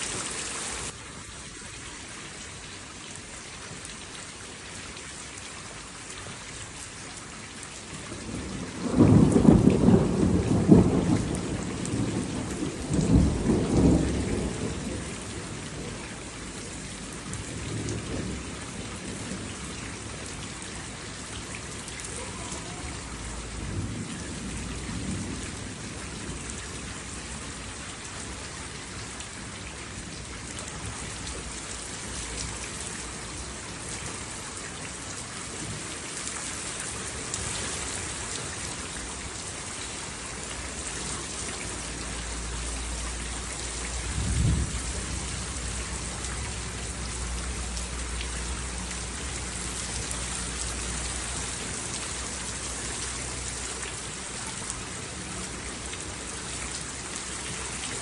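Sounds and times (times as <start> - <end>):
steady rain falling: 0.0 - 58.0
thunder rumbling: 8.2 - 20.4, 43.9 - 46.9
thunder clap: 44.1 - 44.9.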